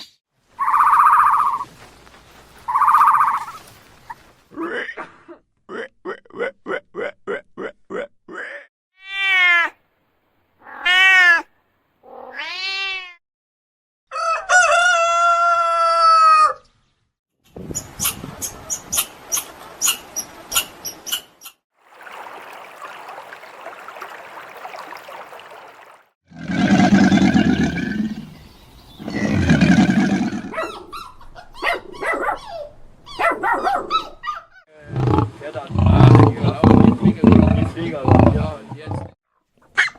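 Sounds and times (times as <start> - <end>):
long loud animal calls: 0.6 - 1.6
short yelping calls: 0.6 - 1.7, 2.7 - 3.6
cat meowing: 12.1 - 13.2.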